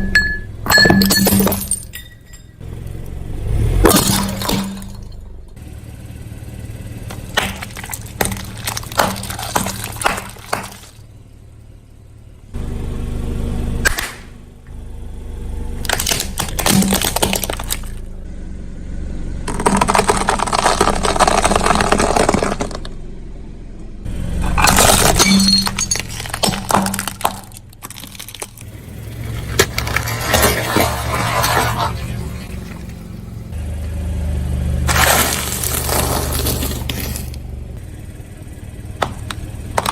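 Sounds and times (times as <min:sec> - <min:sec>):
car humming: 0:00.0 - 0:39.9
tyre crushing brittle objects: 0:07.1 - 0:11.0, 0:15.8 - 0:18.0, 0:19.5 - 0:22.9, 0:24.4 - 0:33.0, 0:34.9 - 0:37.4, 0:39.0 - 0:39.9.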